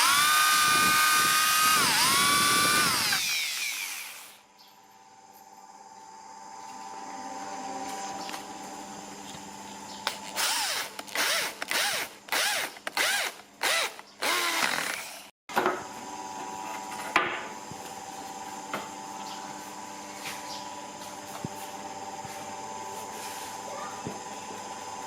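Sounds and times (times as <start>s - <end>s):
power drill motor whine: 0.0s - 4.5s, 10.3s - 15.3s.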